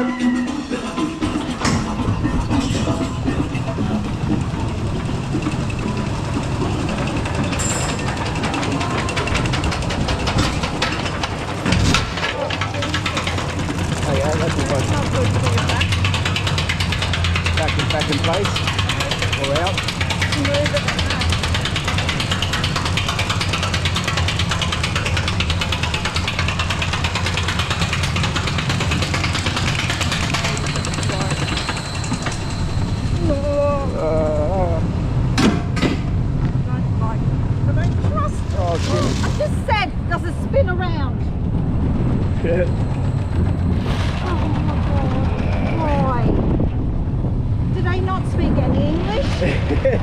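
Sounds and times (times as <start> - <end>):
coaster car rumbling on steel track: 0.0 - 50.0
ride machinery hum: 0.0 - 50.0
fast clicking rattle: 2.7 - 33.2.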